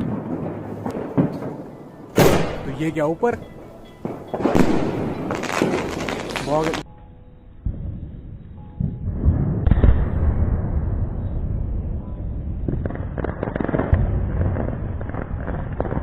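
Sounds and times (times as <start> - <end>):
sharp firework pops: 0.0 - 1.6, 12.6 - 16.0
firework loud bang: 2.2 - 3.1, 4.0 - 6.8, 8.8 - 16.0
rumbling noise: 7.6 - 16.0.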